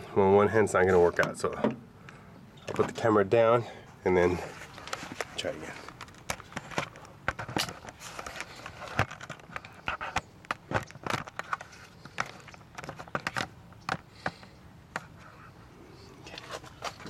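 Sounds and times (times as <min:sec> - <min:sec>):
handling clicks and knocks: 0:04.7 - 0:15.2.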